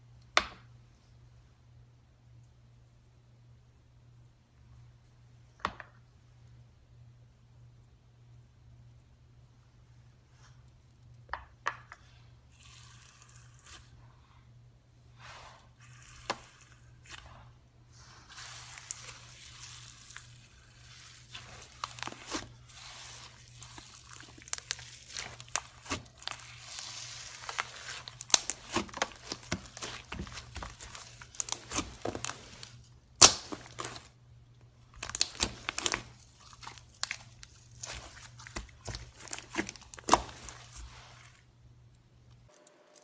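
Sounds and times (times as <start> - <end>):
slime squished by hand: 18.3 - 34.1, 35.0 - 41.3.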